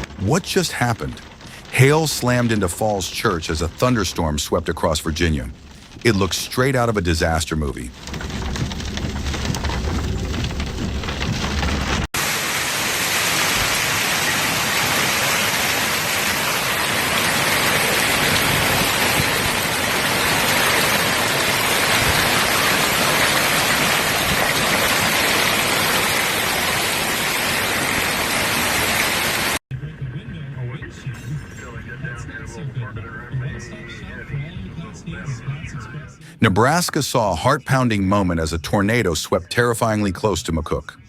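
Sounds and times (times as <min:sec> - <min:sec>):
heavy rain downpour: 0:00.0 - 0:29.6
deep rumble: 0:07.7 - 0:12.1.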